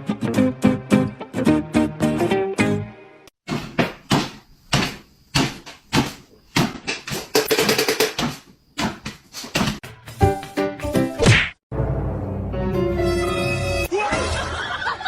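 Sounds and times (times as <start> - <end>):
sharp knocks and thuds: 3.4 - 9.9.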